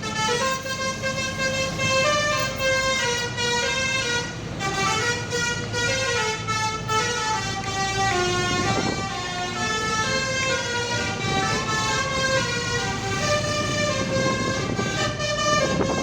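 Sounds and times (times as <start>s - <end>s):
engine noise: 0.0s - 16.0s
musical air horns playing: 0.0s - 16.0s.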